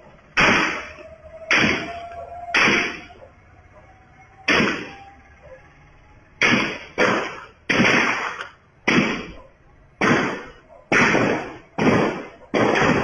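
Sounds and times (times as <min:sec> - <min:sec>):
rifle gunshots with echo: 0:00.4 - 0:03.2, 0:06.4 - 0:09.4, 0:10.0 - 0:13.0.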